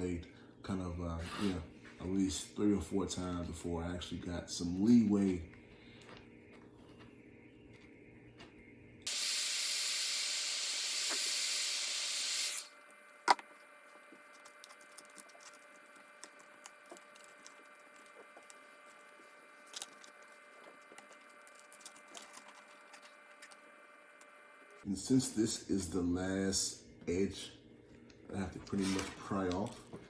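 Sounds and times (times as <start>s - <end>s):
heat gun blowing: 9.1s - 12.8s.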